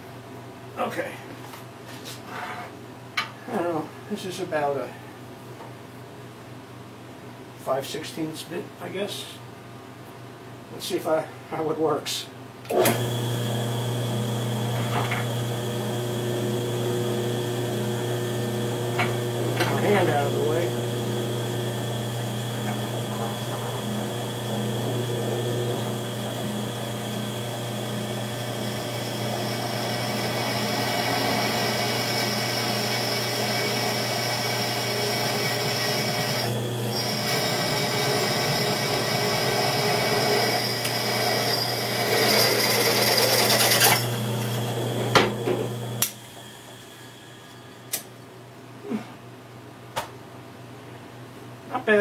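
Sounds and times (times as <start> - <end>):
drill press cutting steel: 12.7 - 48.1.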